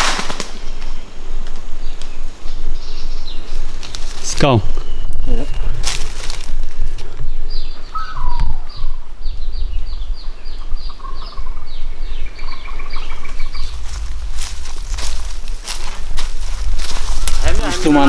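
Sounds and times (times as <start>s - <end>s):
bird chirping: 0.0s - 14.1s
wind rumble: 0.0s - 18.0s.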